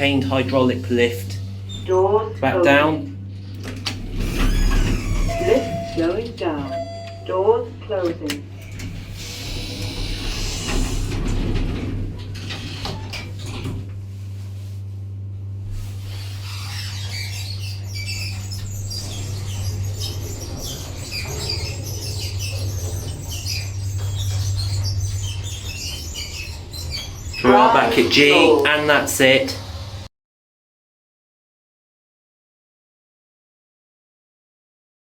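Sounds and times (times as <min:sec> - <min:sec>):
lift low hum: 0:00.0 - 0:16.5.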